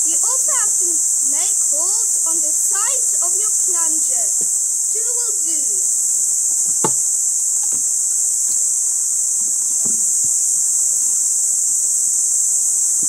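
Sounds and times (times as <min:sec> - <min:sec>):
insects chorus: 0:00.0 - 0:13.0
faint knocks: 0:06.6 - 0:08.6, 0:09.8 - 0:10.4.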